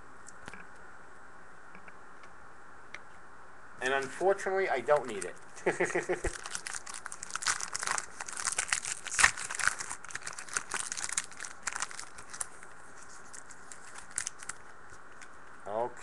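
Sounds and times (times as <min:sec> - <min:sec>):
wrapper tearing and crinkling: 0:06.1 - 0:15.0.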